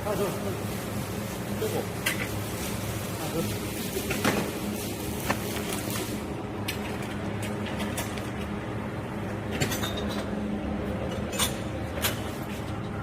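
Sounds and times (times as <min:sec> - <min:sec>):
welding machine humming: 0:00.0 - 0:09.5.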